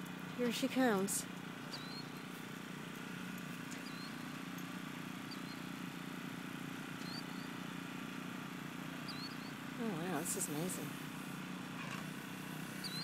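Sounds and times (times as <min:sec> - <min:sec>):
low mechanical hum: 0:00.0 - 0:13.0
bird chirps: 0:01.7 - 0:02.4, 0:03.7 - 0:04.4, 0:05.2 - 0:06.1, 0:07.0 - 0:07.6, 0:09.0 - 0:09.7, 0:12.8 - 0:13.0.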